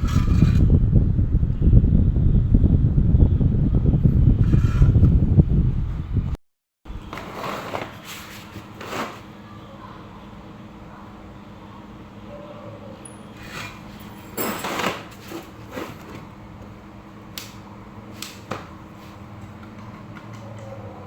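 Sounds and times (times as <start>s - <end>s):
scraping clatter of tools: 13.1s - 16.2s.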